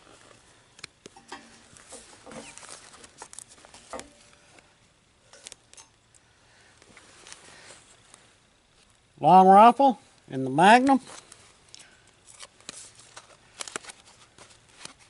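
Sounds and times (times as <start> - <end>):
paper rustling: 1.7 - 4.5, 12.2 - 15.0.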